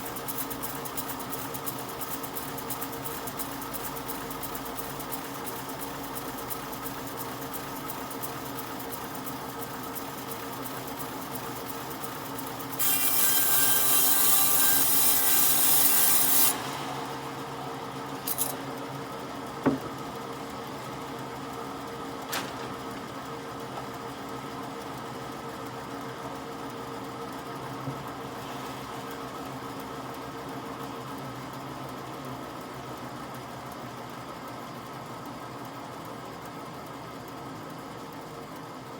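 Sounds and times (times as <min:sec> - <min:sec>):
tool scraping wood: 0:12.7 - 0:16.6
sharp knocks: 0:19.6 - 0:20.0.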